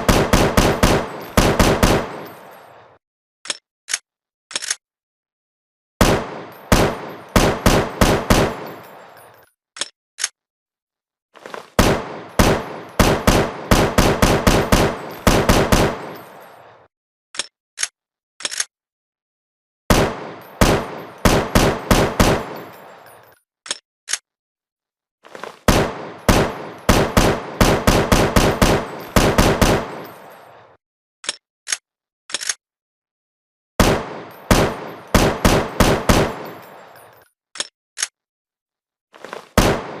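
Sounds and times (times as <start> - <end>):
rifle automatic fire bursts: 0.0 - 2.2, 6.0 - 8.7, 11.8 - 16.1, 19.9 - 22.6, 25.7 - 30.0, 33.8 - 36.5
single rifle shots: 0.0 - 2.4, 6.0 - 8.9, 11.8 - 16.3, 19.9 - 22.8, 25.7 - 30.2, 33.8 - 36.8, 39.6 - 40.0.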